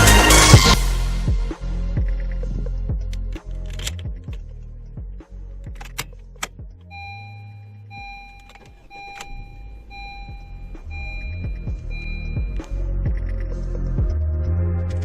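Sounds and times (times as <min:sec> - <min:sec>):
low steady hum: 0:06.8 - 0:12.6
car warning chime beeping: 0:06.8 - 0:12.9.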